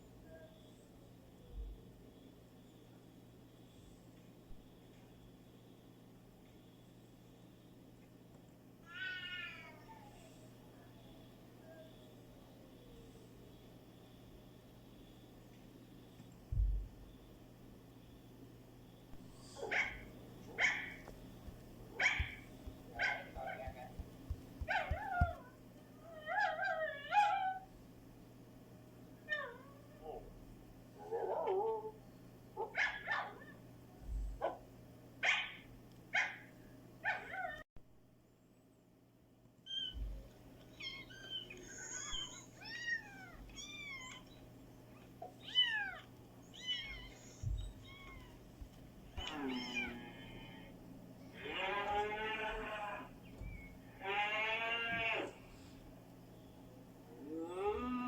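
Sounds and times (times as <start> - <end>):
pet animal whining: 19.2 - 25.4, 49.2 - 50.7
cat mewing: 20.6 - 25.4
soft thumps: 20.9 - 25.4.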